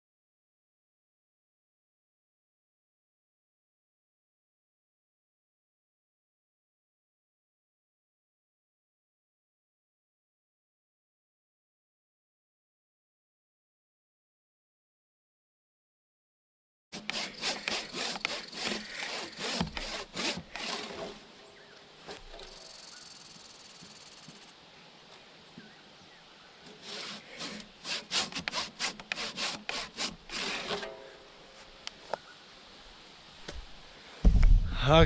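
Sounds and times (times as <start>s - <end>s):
handsaw cutting wood: 16.9s - 21.4s, 26.7s - 31.0s.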